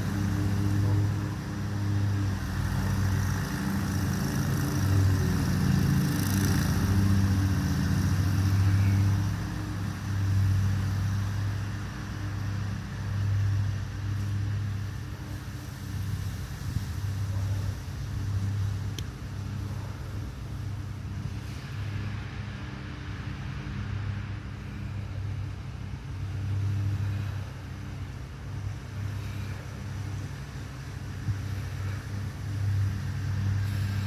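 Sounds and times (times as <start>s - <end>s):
lawn mower engine running: 0.0s - 21.7s.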